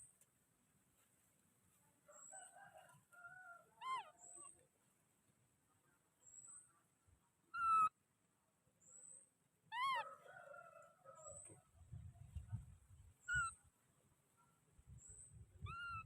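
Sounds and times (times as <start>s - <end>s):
baby monkey high-pitched calls: 3.8s - 4.4s, 7.6s - 7.9s, 9.7s - 10.0s, 13.2s - 13.6s, 15.6s - 16.0s.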